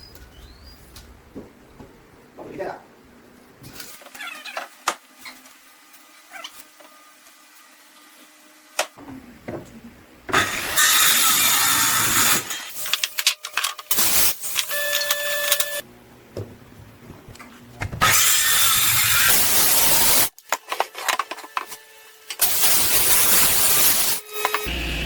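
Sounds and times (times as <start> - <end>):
power tool working wood: 23.3 - 25.0.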